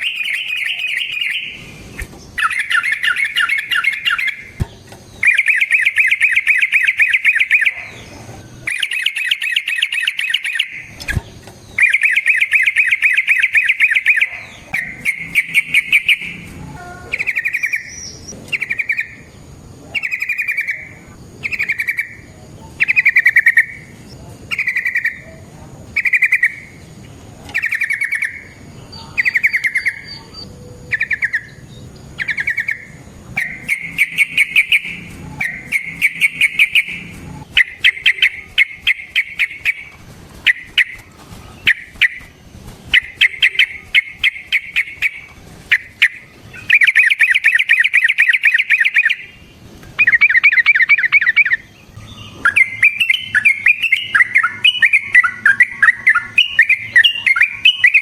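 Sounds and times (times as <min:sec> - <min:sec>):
bird singing bubbling trills: 0:00.0 - 0:19.3, 0:20.0 - 0:25.3, 0:26.0 - 0:26.8, 0:27.5 - 0:41.0, 0:42.9 - 0:49.4, 0:50.0 - 0:58.0.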